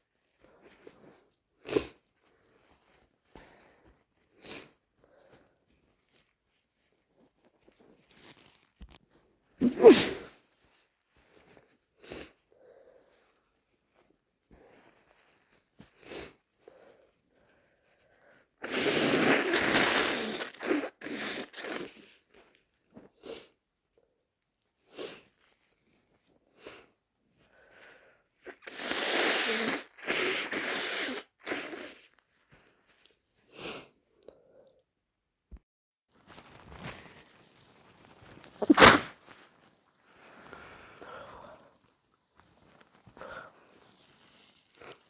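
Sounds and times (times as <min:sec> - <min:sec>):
person sneezing: 0:09.6 - 0:10.3, 0:38.6 - 0:39.3
person sniffing: 0:09.6 - 0:10.3, 0:28.5 - 0:32.1, 0:38.4 - 0:39.3, 0:40.2 - 0:41.7
person blowing nose: 0:09.6 - 0:10.4, 0:18.6 - 0:22.1, 0:28.5 - 0:32.2, 0:33.5 - 0:33.9, 0:38.2 - 0:39.5.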